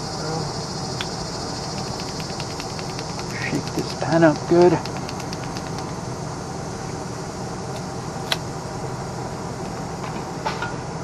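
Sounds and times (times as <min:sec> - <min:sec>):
steady mechanical hum: 0:00.0 - 0:11.0
sharp click: 0:01.0 - 0:06.0.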